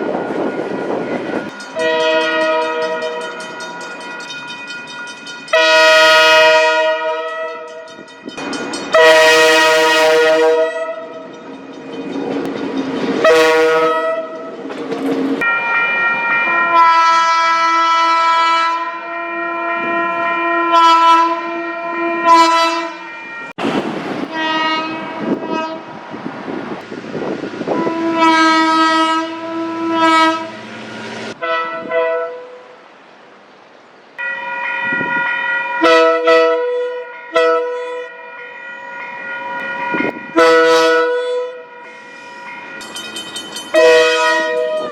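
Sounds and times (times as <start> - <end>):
train air horns blasting: 1.4 - 3.5, 5.5 - 7.9, 8.9 - 11.3, 13.2 - 14.6, 15.6 - 23.2, 24.2 - 26.0, 27.6 - 30.7, 31.3 - 32.8, 35.8 - 38.6, 40.0 - 42.5, 43.7 - 44.9.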